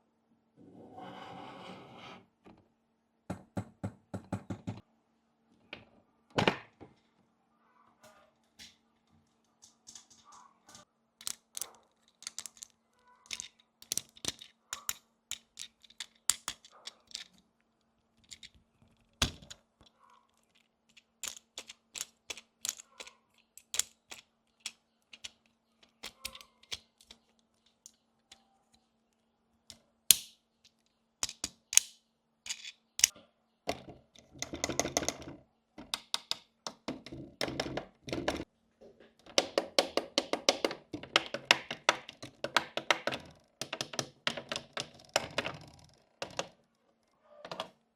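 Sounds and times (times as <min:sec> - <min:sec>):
plastic toy pieces clicking: 0:11.2 - 0:17.4, 0:18.2 - 0:18.6, 0:19.2 - 0:28.5, 0:30.1 - 0:33.1, 0:34.1 - 0:38.5, 0:39.3 - 0:46.6.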